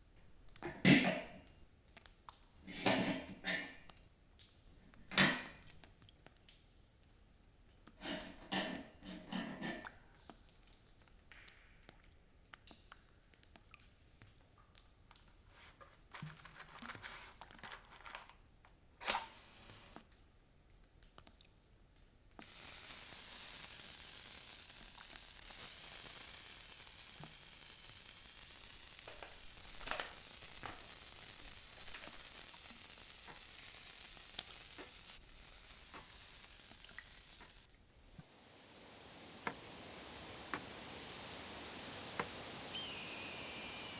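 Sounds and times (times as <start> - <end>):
steady crackling hiss: 0.0 - 1.8, 2.5 - 6.0, 8.0 - 10.1, 15.3 - 21.0, 22.2 - 43.9
soft scraping and clicking: 13.4 - 20.2.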